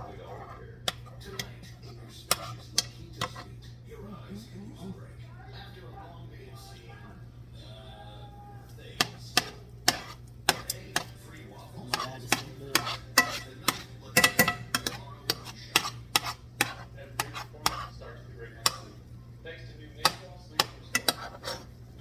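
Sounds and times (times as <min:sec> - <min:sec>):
utensil scraping a cooking pot: 0:00.0 - 0:03.9, 0:08.7 - 0:22.0.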